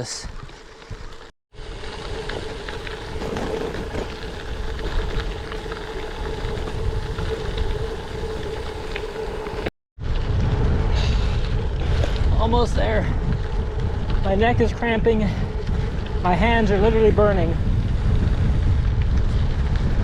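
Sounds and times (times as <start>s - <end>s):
bike tyres rumbling on dirt: 0.0s - 20.0s
wind on microphone: 0.2s - 20.0s.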